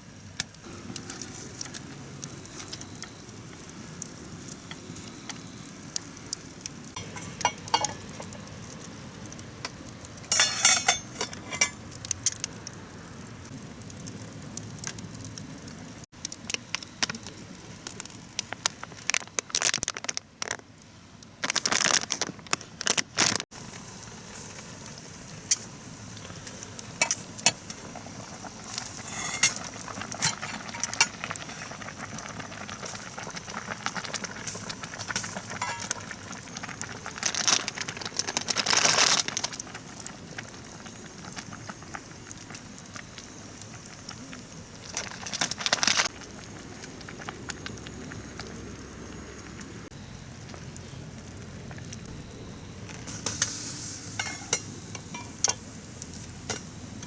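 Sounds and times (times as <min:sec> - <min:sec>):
pot bubbling and simmering: 0:00.0 - 0:57.0
utensils clinking: 0:07.0 - 0:08.2, 0:10.3 - 0:11.8, 0:28.7 - 0:31.4, 0:35.2 - 0:36.0, 0:54.1 - 0:55.6
utensils scraping and stirring pot: 0:07.0 - 0:08.2, 0:10.3 - 0:11.8, 0:28.6 - 0:31.6, 0:35.5 - 0:36.0, 0:54.1 - 0:55.6.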